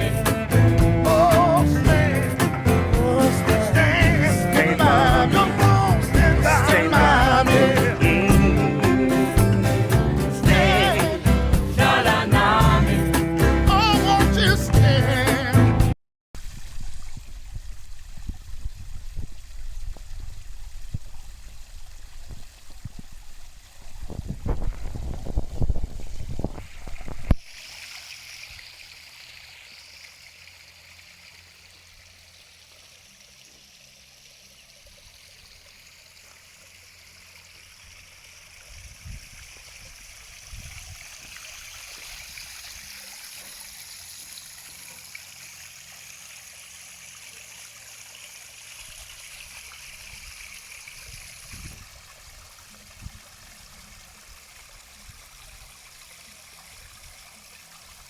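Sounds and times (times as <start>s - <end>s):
water trickling down stones: 16.4s - 58.0s.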